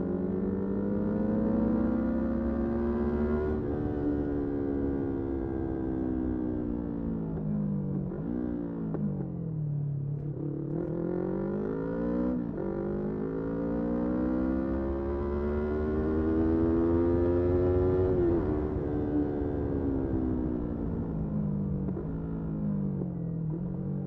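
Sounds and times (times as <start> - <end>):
motorcycle engine accelerating: 10.2 - 24.0.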